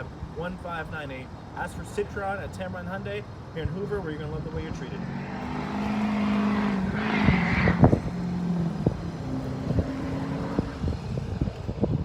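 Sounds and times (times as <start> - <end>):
vehicle engine humming: 1.2 - 12.0
rush of noise: 4.6 - 12.0.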